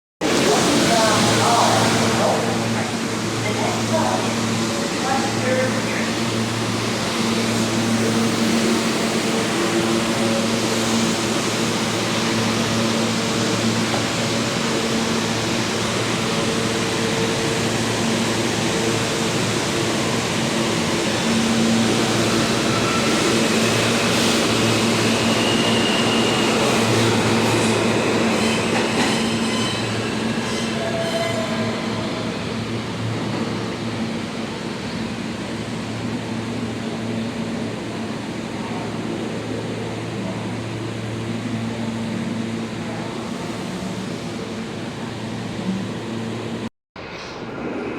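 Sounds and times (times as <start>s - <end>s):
subway train running on track: 0.2s - 47.9s
high wheel squeals: 24.6s - 32.1s.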